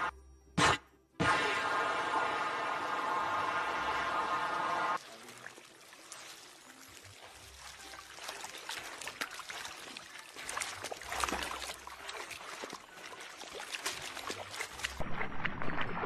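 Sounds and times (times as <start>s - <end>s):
water trickling and splashing: 5.0s - 16.0s.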